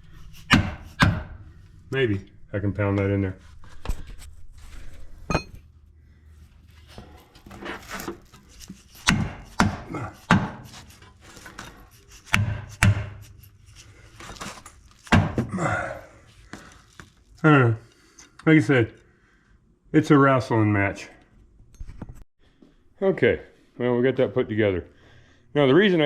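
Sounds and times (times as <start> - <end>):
parts scraping and shifting: 0.0 - 18.5
sharp knocks of pounding: 0.5 - 1.4, 9.0 - 10.9, 12.3 - 13.2, 15.1 - 15.6.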